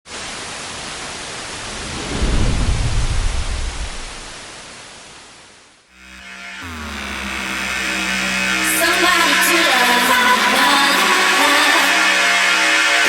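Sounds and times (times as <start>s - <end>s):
steady rain hiss: 0.1s - 5.9s
thunder rumble: 1.5s - 4.6s
sustained synth tone: 6.0s - 13.0s.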